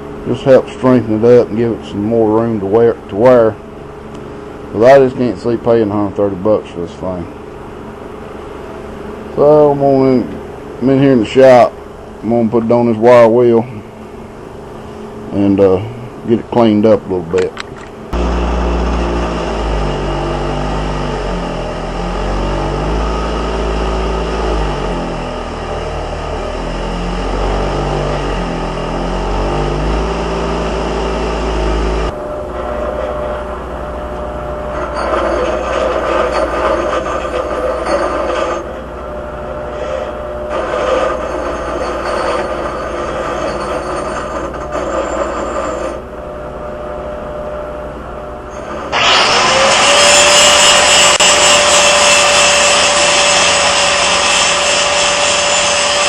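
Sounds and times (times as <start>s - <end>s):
wire wheel motor hum: 17.4s - 56.0s
wire wheel scraping metal: 34.6s - 38.8s, 39.6s - 46.0s, 48.5s - 56.0s.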